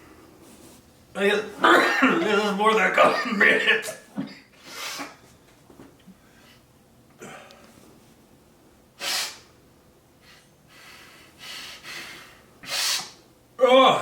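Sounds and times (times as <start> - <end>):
man breathing hard through nose: 9.0 - 9.5, 10.2 - 13.2.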